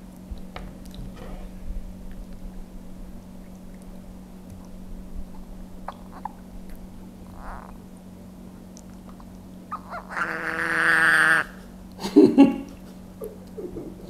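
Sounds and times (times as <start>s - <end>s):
steady low hum: 0.0s - 14.0s
frog screaming: 7.2s - 7.8s, 9.7s - 11.6s.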